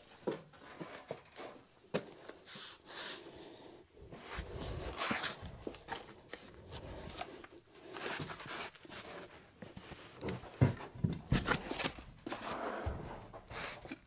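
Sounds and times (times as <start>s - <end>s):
footsteps: 4.1s - 14.0s
knocks and rustling: 8.0s - 14.0s.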